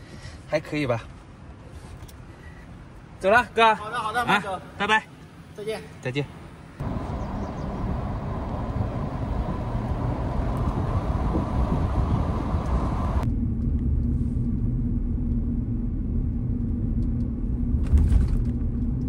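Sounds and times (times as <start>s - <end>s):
tyre and road rumble: 6.8s - 13.3s
steady low hum: 6.8s - 19.0s.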